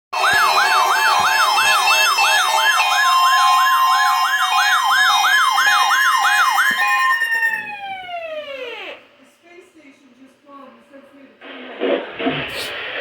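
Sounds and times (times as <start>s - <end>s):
electronic siren yelping: 0.2s - 9.0s.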